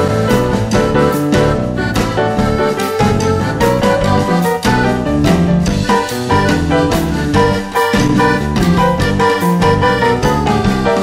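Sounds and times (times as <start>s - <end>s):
piano and drums music: 0.0s - 11.0s.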